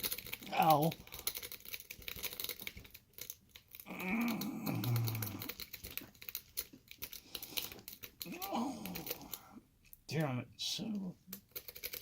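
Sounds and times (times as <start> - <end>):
drawn-out groan: 3.8 - 5.8.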